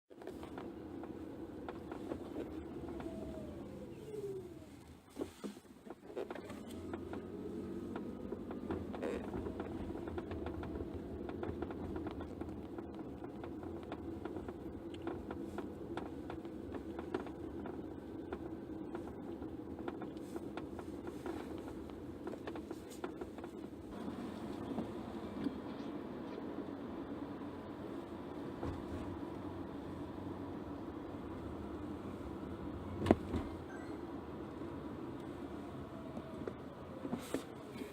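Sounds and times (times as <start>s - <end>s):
tapping and rattling in car cabin: 0.1s - 25.8s, 28.4s - 29.4s, 30.6s - 33.8s
road noise: 0.1s - 37.9s.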